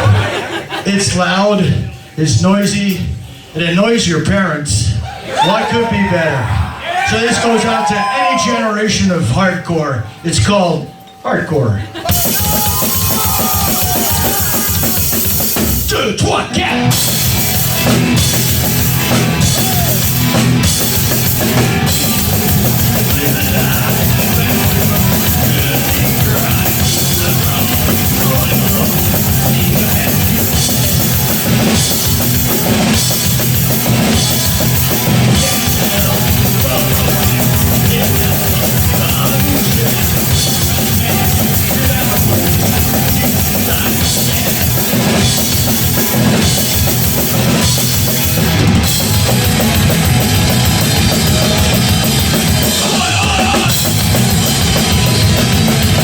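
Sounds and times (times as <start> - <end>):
distorted electric guitars: 11.8 - 56.0
bass guitar: 12.0 - 56.0
fast drum kit: 12.1 - 56.0.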